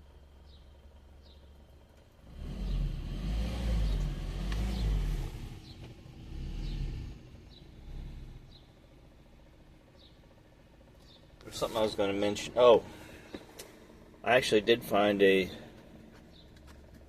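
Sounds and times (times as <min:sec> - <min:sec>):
passing traffic: 0:00.0 - 0:17.0
car driving past: 0:02.2 - 0:08.6.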